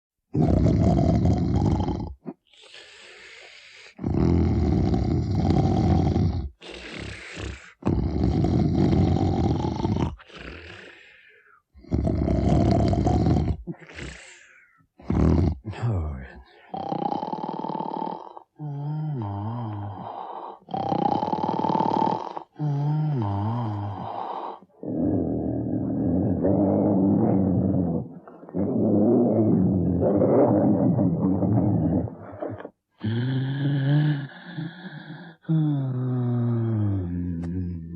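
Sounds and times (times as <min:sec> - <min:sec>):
loud rumbling snore: 0:00.4 - 0:02.1, 0:04.0 - 0:10.9, 0:11.8 - 0:14.4, 0:20.7 - 0:22.5, 0:23.1 - 0:35.3
breathy exhale: 0:02.5 - 0:04.0
low rough rumbling snore: 0:24.8 - 0:35.2.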